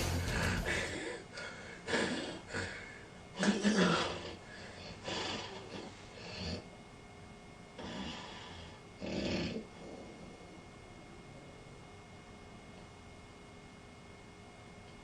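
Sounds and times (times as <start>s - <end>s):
person snoring: 0.0s - 6.7s, 7.8s - 10.4s.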